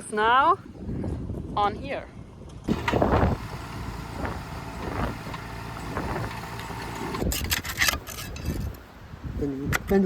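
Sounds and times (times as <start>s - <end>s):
engine rumbling: 2.6s - 8.1s.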